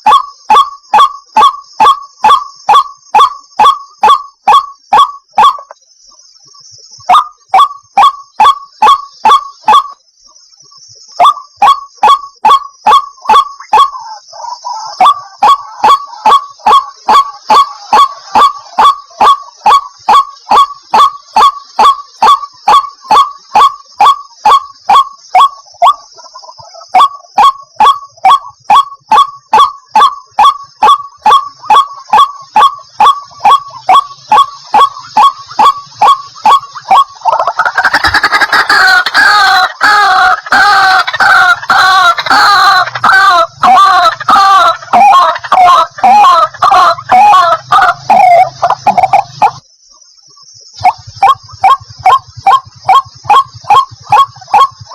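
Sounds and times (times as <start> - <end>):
bird calling repeated notes: 0.0 - 49.7, 50.3 - 54.9
steady high hiss: 30.2 - 42.3.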